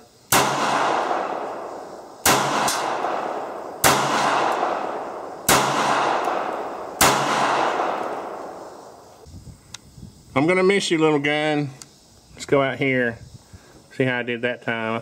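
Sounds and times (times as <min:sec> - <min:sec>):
pistol shots with echo: 0:00.3 - 0:09.0.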